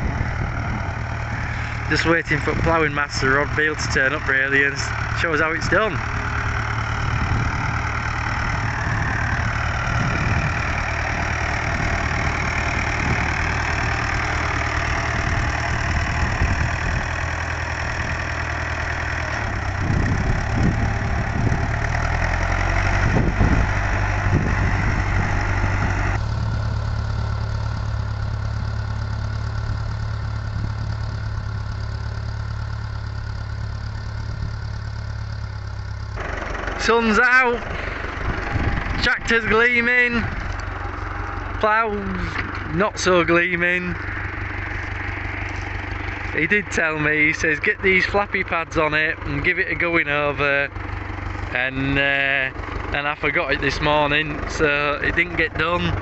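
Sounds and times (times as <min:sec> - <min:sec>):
tractor engine running: 0:00.0 - 0:56.0.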